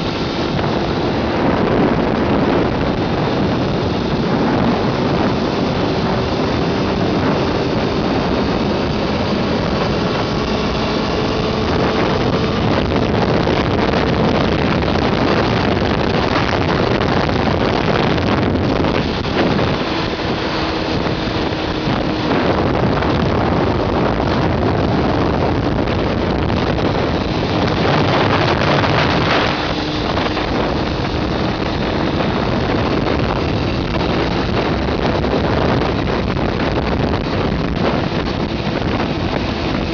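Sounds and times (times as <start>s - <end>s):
motorcycle engine running: 0.0s - 39.9s
wind rush on microphone: 0.0s - 39.9s.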